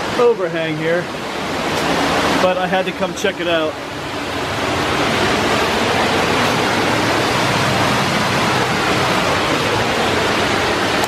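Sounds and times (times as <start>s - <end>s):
waterfall rushing: 0.0s - 11.0s.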